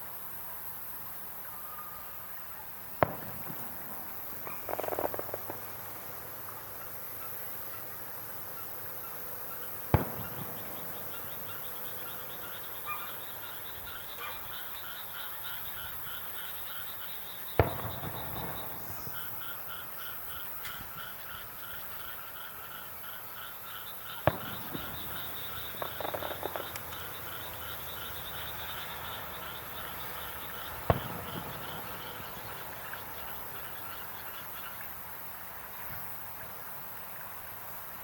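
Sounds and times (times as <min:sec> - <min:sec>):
firework crackle: 0:02.1 - 0:22.2, 0:23.9 - 0:38.0
frogs calling rhythmically: 0:02.2 - 0:35.4
distant firework booms: 0:03.0 - 0:06.5, 0:08.9 - 0:14.0, 0:17.6 - 0:19.8, 0:24.1 - 0:34.0.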